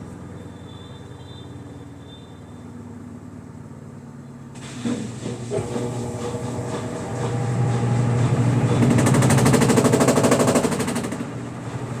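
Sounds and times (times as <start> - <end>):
washing machine spin hum: 0.0 - 12.0
fast rattling: 8.8 - 11.3.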